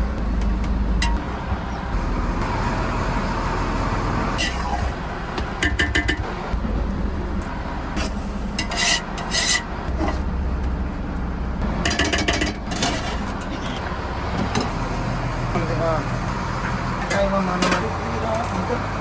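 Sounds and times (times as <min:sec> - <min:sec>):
boat engine drone: 0:00.0 - 0:19.0
rasping scraping strokes: 0:08.0 - 0:10.3.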